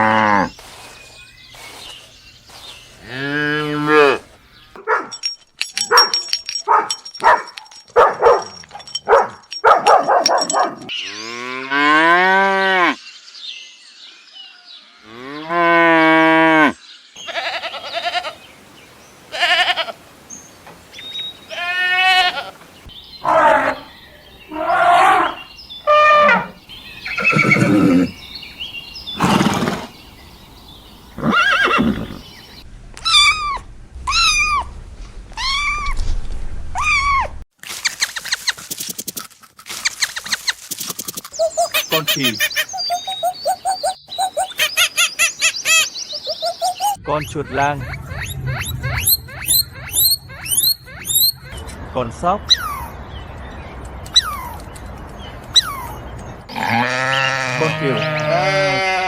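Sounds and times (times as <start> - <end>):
animal calls: 23.2 - 30.0, 31.0 - 34.7, 41.3 - 51.8
rapid repeated chirps: 40.1 - 51.6.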